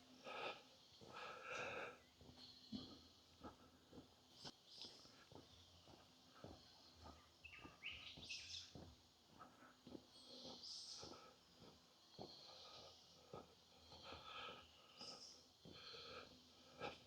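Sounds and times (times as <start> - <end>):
birds chirping: 0.2 - 8.9, 10.0 - 16.1
footsteps on forest floor: 3.9 - 12.4.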